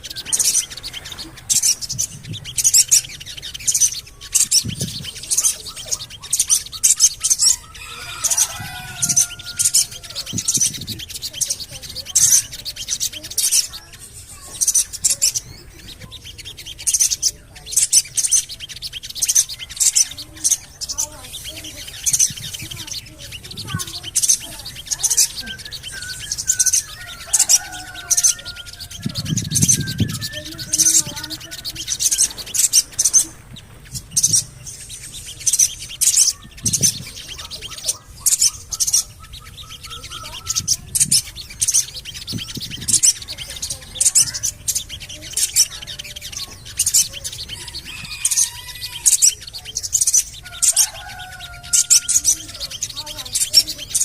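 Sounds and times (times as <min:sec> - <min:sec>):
bird high chirps: 0:00.0 - 0:54.0
faint low whistles: 0:23.5 - 0:32.3.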